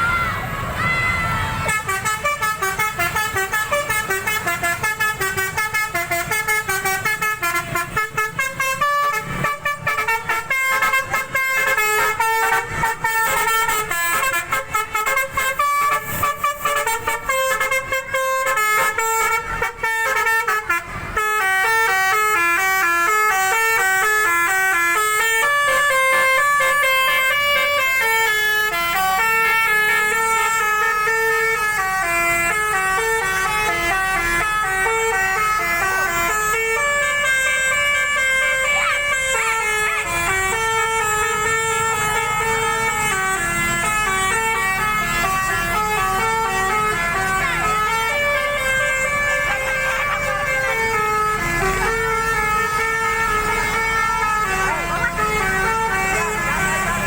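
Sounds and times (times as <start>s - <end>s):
musical air horns playing tune: 1.6s - 57.0s.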